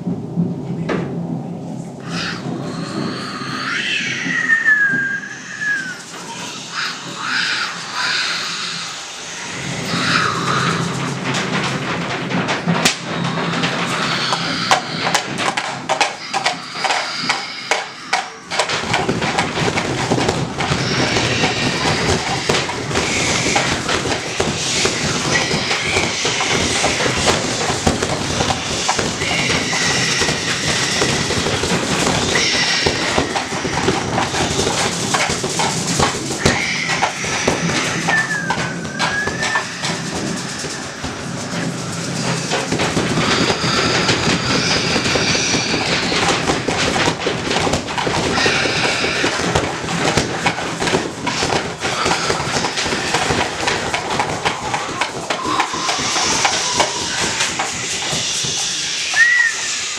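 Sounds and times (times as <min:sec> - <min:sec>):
rushing rain-like noise: 0:00.0 - 0:59.9
whistling wind glides: 0:01.6 - 0:59.9
hands tapping: 0:13.9 - 0:59.7.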